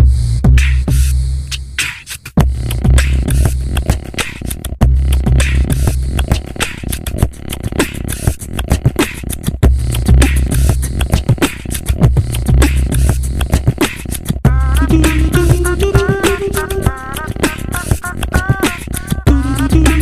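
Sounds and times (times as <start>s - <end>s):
low buzzing bass: 0.0s - 1.7s, 2.4s - 3.9s, 4.8s - 6.3s, 9.6s - 11.2s, 12.0s - 13.6s, 14.4s - 17.0s, 19.3s - 20.0s
beatboxing vocal percussion: 0.0s - 20.0s.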